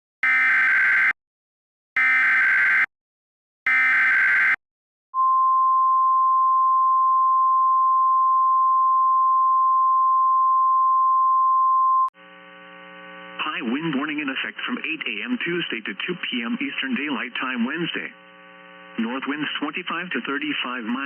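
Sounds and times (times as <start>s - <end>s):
steady warning alarm tone: 0.2s - 1.2s, 2.0s - 2.9s, 3.7s - 4.6s.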